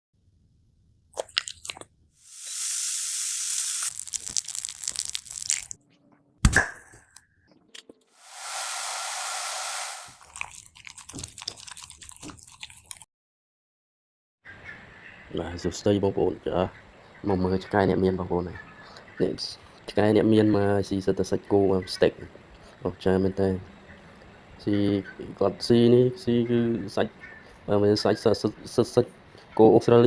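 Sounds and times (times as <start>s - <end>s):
steady hiss: 2.2s - 3.9s, 8.2s - 10.2s
dog chewing and crunching: 10.2s - 13.0s.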